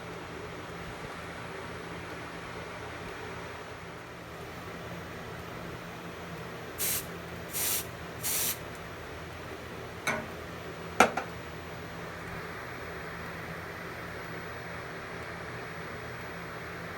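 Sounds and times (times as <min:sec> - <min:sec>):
aerosol can spraying: 0:06.8 - 0:08.6.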